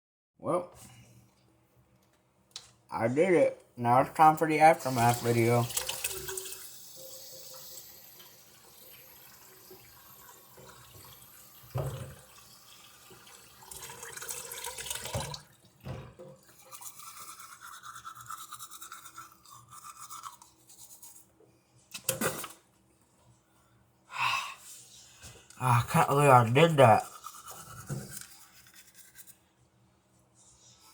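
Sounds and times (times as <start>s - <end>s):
toothbrush scrubbing teeth: 16.4s - 22.0s, 25.5s - 29.5s.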